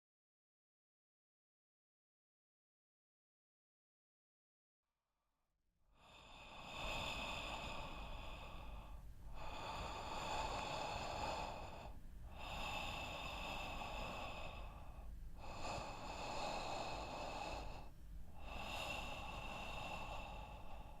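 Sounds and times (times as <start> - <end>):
person breathing heavily: 6.0 - 21.0.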